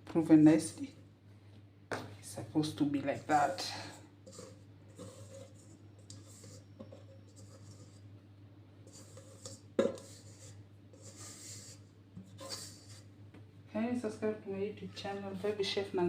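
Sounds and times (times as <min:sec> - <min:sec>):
hands rubbing bread dough: 0:04.3 - 0:08.1, 0:08.8 - 0:13.1.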